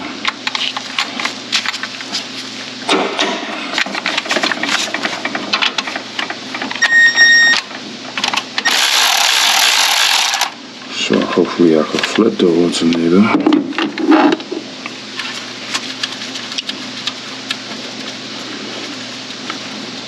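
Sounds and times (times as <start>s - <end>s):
short electronic beep: 6.8s - 7.7s
ratchet wrench clicking: 8.7s - 10.5s.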